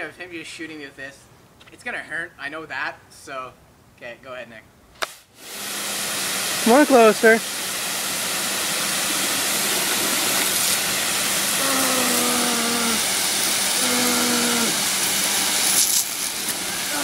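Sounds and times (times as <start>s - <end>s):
pressure washer spraying: 5.0s - 17.0s
person crying out: 11.6s - 13.1s, 13.7s - 14.8s.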